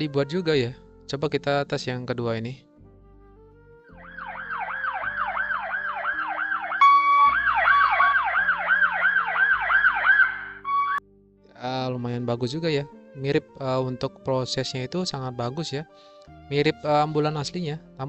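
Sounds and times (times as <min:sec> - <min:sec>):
low sustained notes: 0:03.6 - 0:11.0
ambulance siren wailing: 0:03.9 - 0:11.0
steady high tone: 0:04.6 - 0:11.0.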